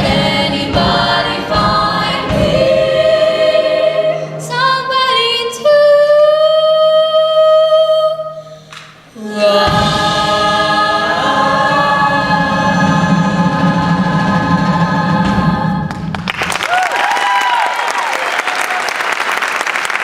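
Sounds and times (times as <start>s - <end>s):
choir singing in harmony: 0.0s - 8.4s, 9.1s - 16.2s
musical accompaniment: 0.0s - 16.6s.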